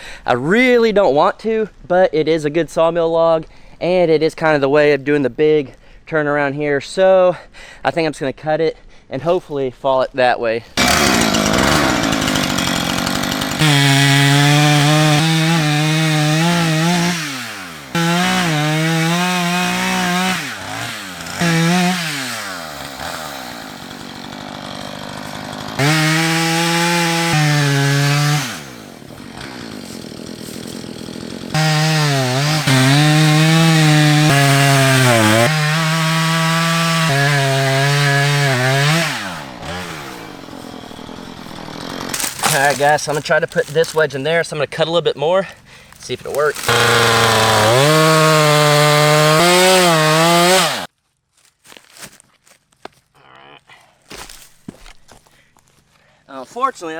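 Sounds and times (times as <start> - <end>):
chainsaw cutting tree trunk: 10.8 - 44.5, 45.7 - 50.9.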